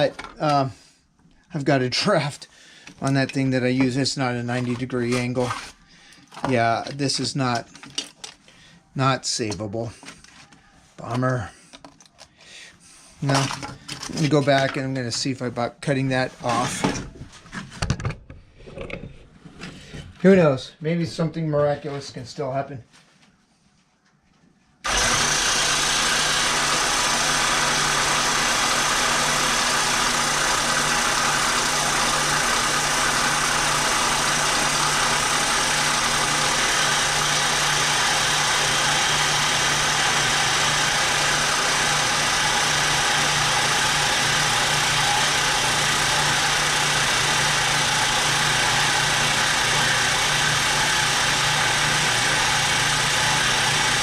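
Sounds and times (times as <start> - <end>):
bandsaw running: 24.8 - 54.0.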